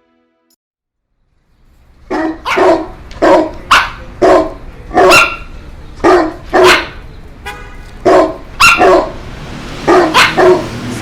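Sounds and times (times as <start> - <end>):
dog barking: 2.1 - 7.0, 8.0 - 9.2, 9.8 - 10.8.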